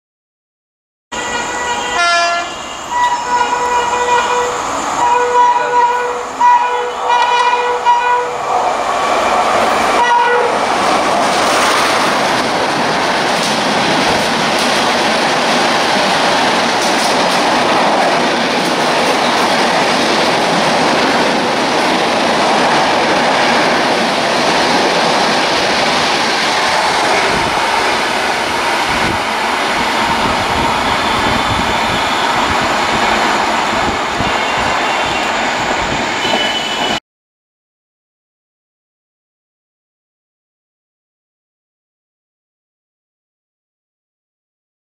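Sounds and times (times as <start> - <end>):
locomotive horn: 1.1 - 8.4, 10.0 - 10.7, 36.2 - 37.0
train wheels rushing on rails: 1.2 - 37.0.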